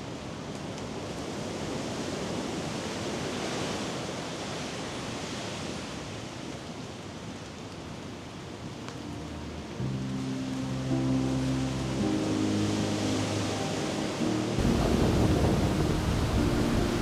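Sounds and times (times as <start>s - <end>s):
ocean surf rushing: 8.0s - 17.0s.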